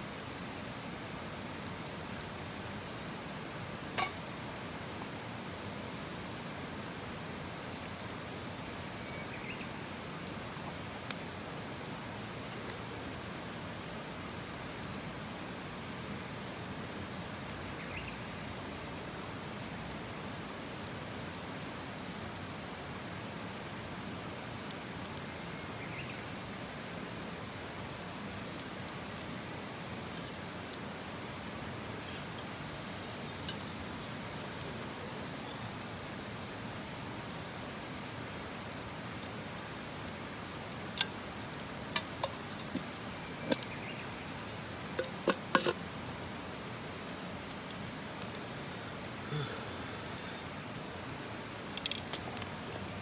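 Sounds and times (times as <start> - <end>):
steady outdoor hiss: 0.0 - 53.0
faint ticks: 6.9 - 12.8, 47.4 - 53.0
sharp clicks and knocks: 45.0 - 45.8.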